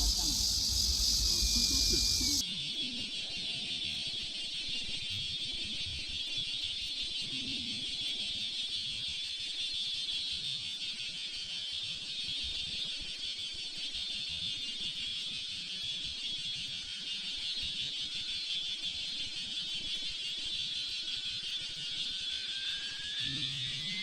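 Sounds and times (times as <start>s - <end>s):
electric ducted fan whine: 0.0s - 2.4s
wind rumbling on microphone: 0.0s - 2.4s.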